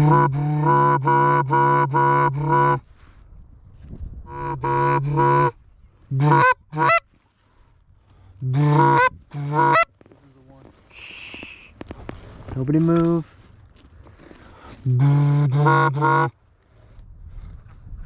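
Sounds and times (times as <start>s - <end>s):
goose call honks: 0.0s - 2.8s, 4.3s - 7.0s, 8.4s - 9.9s, 14.9s - 16.3s.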